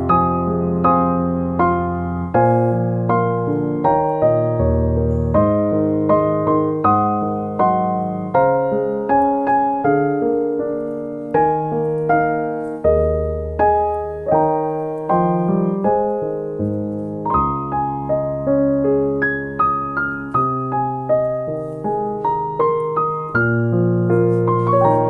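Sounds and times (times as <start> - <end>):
slow solo piano piece: 0.0 - 25.0.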